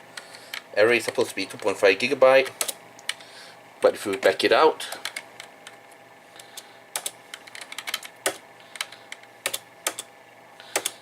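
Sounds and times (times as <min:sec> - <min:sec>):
faint steady hum: 0:00.0 - 0:11.0
computer keyboard clicking: 0:04.9 - 0:05.8, 0:06.5 - 0:10.1, 0:10.7 - 0:11.0.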